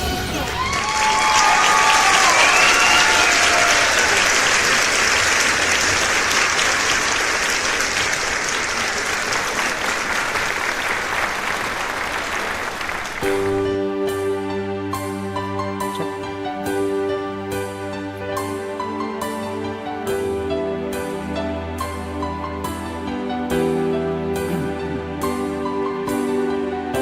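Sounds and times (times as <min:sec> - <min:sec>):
large audience applauding: 0:00.0 - 0:13.8
slow music with sustained notes: 0:13.2 - 0:27.0.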